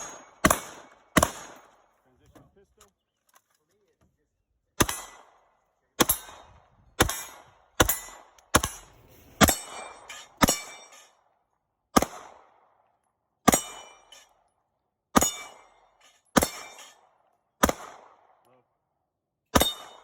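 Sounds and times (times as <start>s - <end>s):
pistol shots: 0.0s - 1.8s, 4.8s - 10.9s, 11.9s - 12.7s, 16.4s - 17.0s, 17.6s - 18.4s, 19.5s - 20.0s
steel target clanging: 7.1s - 11.2s.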